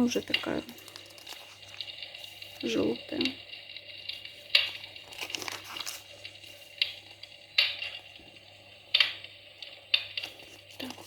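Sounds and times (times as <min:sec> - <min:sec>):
glossy pages turning: 0:00.0 - 0:02.7, 0:04.5 - 0:07.0, 0:10.2 - 0:11.0.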